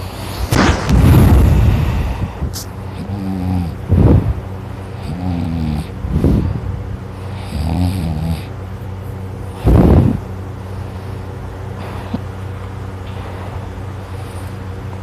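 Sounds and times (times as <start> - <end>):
person snoring loudly: 2.9 - 4.4, 5.0 - 6.6, 7.3 - 8.5, 9.5 - 10.2.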